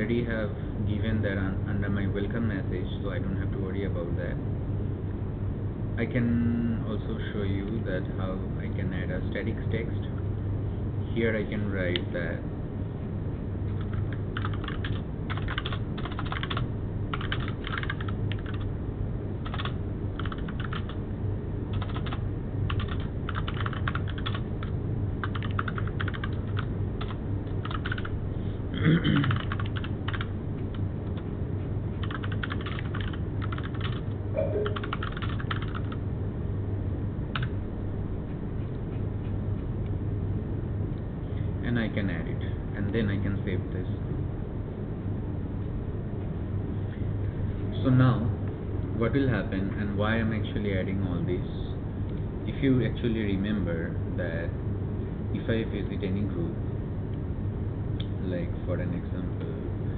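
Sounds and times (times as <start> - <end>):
steady low hum: 0.0 - 59.9
typing on a keyboard: 13.8 - 18.6, 19.4 - 21.0, 21.7 - 28.1, 29.2 - 30.3, 32.0 - 36.0.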